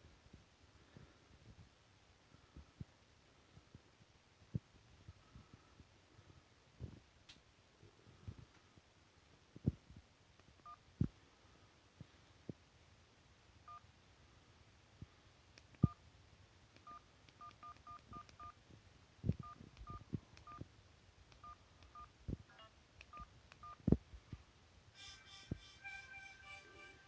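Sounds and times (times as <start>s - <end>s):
phone ringtone: 25.0s - 27.0s.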